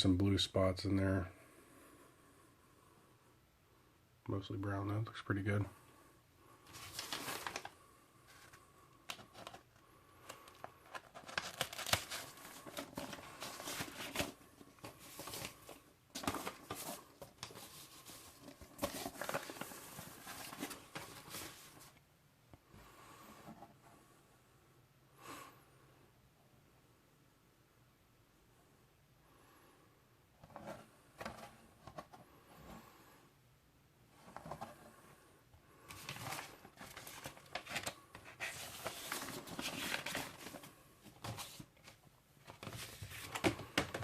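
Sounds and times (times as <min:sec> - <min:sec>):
paper sleeves rustling: 0:06.6 - 0:09.6, 0:10.3 - 0:22.0, 0:35.8 - 0:43.6.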